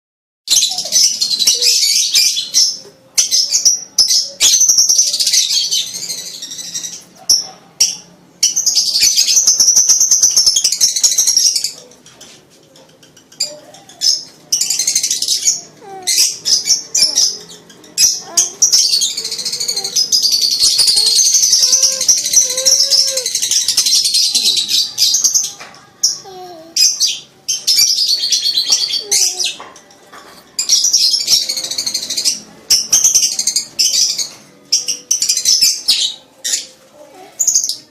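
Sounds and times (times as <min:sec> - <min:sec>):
lovebird chattering trills: 0:13.4 - 0:25.5.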